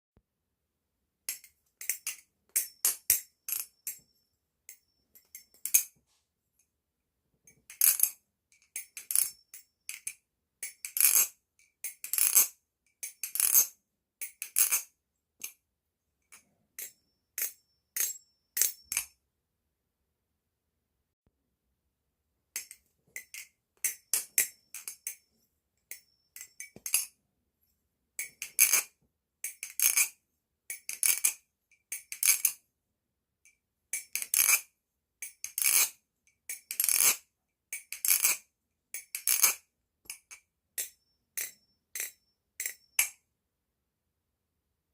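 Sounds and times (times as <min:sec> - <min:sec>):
butterfly knife metallic clacks: 0:01.3 - 0:04.1, 0:07.5 - 0:15.6, 0:16.3 - 0:19.2, 0:22.6 - 0:25.3, 0:25.9 - 0:27.2, 0:39.0 - 0:43.2.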